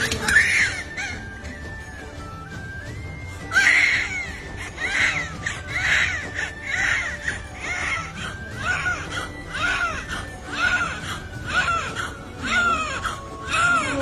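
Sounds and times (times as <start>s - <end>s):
infant crying: 3.5s - 14.0s.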